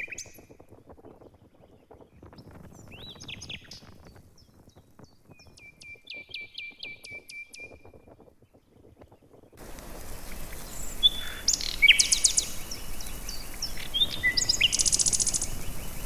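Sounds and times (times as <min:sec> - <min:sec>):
bird singing: 0:00.0 - 0:09.6, 0:10.2 - 0:16.0
low rustling: 0:07.7 - 0:16.0.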